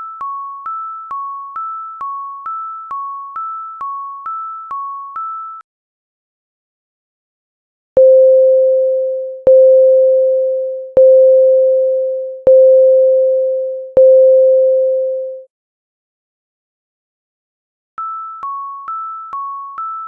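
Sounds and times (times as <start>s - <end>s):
synthesized class bell tone: 8.0s - 15.4s.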